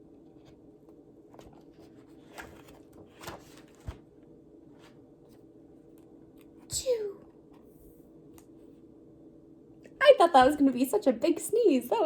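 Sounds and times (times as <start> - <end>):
paper rustling: 1.3 - 5.5.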